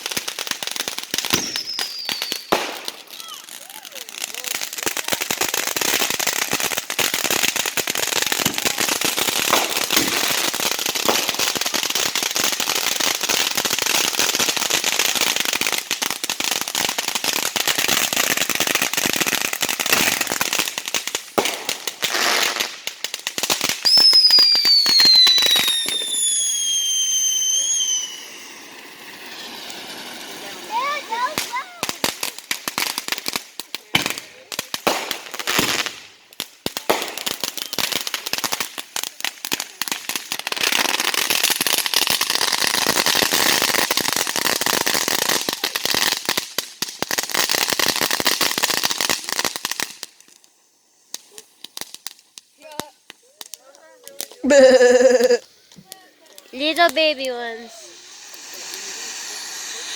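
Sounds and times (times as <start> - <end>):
fireworks crackling and popping: 0.0 - 59.9
firework whistle falling in pitch: 23.9 - 28.6.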